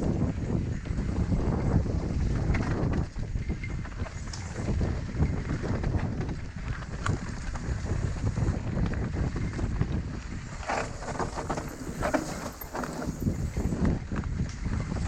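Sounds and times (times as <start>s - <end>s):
wind on microphone: 0.0s - 15.0s
tyres rumbling on dirt: 10.5s - 13.8s
bike knocking and rattling: 10.6s - 13.8s.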